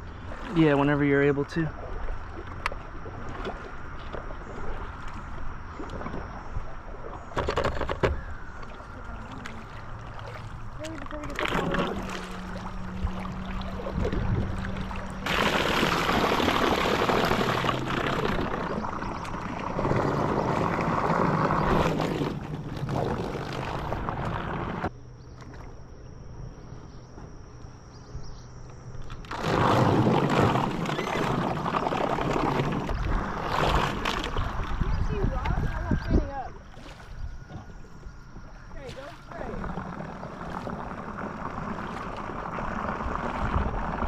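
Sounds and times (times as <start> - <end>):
fast river water rushing: 9.1 - 24.8.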